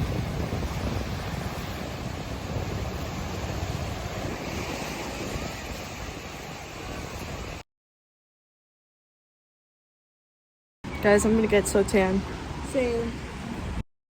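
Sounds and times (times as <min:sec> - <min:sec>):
ocean surf washing onto beach: 0:00.0 - 0:07.6
wind buffeting microphone: 0:00.0 - 0:07.6.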